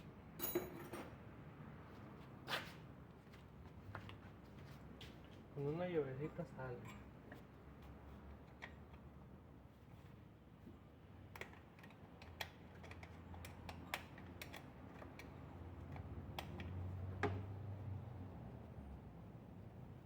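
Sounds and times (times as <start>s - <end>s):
small wrench clicking on metal: 11.3s - 16.8s.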